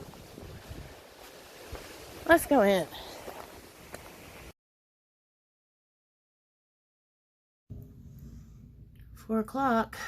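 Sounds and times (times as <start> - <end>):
low rumble: 7.7 - 9.6.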